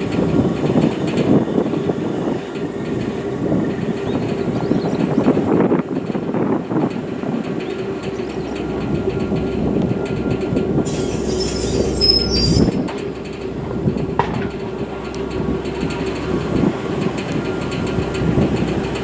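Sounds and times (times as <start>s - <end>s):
train car rolling rumble: 0.0s - 19.0s
high-pitched wheel squeal: 10.0s - 13.2s.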